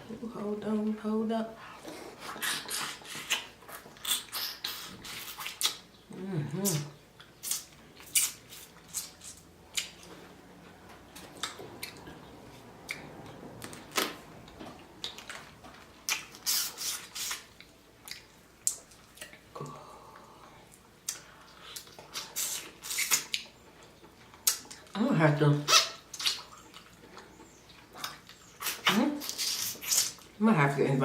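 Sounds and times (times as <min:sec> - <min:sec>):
lip-smacking: 0:01.9 - 0:10.2, 0:11.2 - 0:15.4, 0:16.0 - 0:24.9, 0:25.6 - 0:30.4
wet squishing and sucking: 0:02.1 - 0:05.9, 0:16.0 - 0:19.4, 0:21.1 - 0:23.5, 0:25.7 - 0:27.2, 0:27.8 - 0:30.3.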